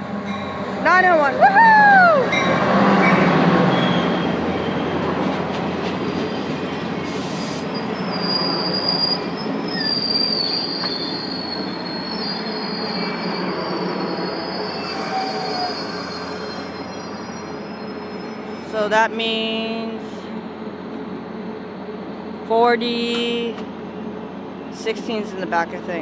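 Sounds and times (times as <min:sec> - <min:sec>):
train wheels rumbling on rails: 0:00.0 - 0:26.0
high-pitched wheel squeal: 0:01.5 - 0:04.9, 0:07.6 - 0:18.7.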